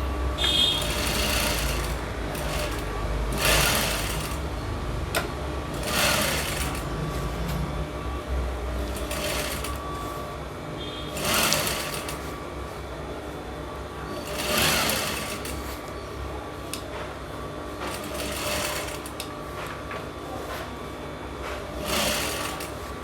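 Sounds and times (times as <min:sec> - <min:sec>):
sewing machine stitching: 0:00.4 - 0:07.3, 0:08.8 - 0:10.2, 0:11.0 - 0:12.4, 0:14.1 - 0:15.8, 0:17.7 - 0:19.4, 0:21.4 - 0:23.0.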